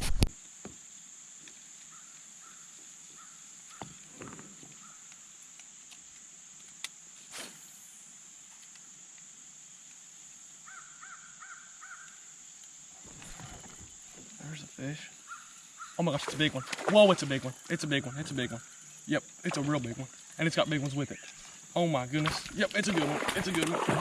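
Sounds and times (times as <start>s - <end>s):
birds calling: 13.0s - 24.0s.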